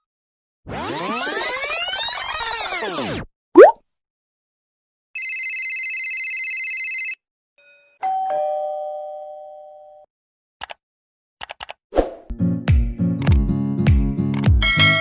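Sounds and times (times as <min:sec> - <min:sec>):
doorbell ringing: 0:05.2 - 0:10.0.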